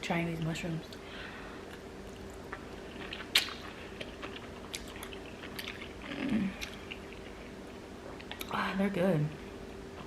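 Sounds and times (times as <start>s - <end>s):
person chewing: 1.6s - 8.6s
wet mouth clicks and smacks: 1.7s - 6.0s.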